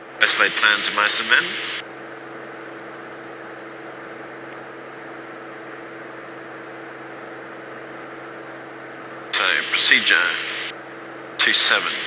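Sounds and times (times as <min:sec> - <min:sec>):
muffled aircraft engine drone: 0:00.0 - 0:12.0
headset hiss: 0:00.2 - 0:01.8, 0:09.4 - 0:10.8, 0:11.4 - 0:12.0.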